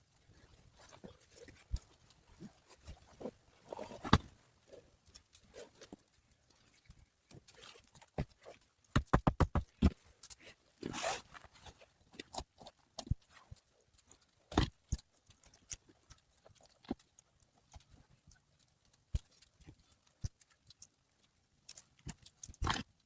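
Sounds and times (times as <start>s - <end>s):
scrape or rustle: 0.0s - 8.7s, 9.8s - 14.7s.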